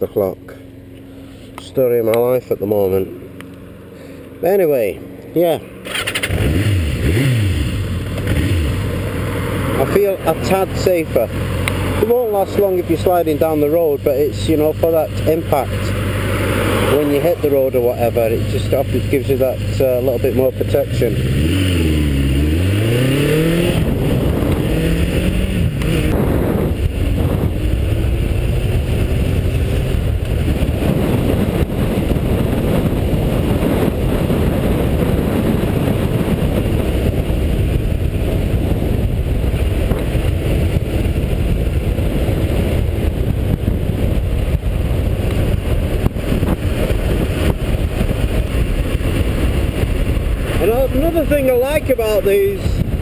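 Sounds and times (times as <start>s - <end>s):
wind and road noise: 0.0s - 53.0s
motorcycle engine running: 0.1s - 53.0s.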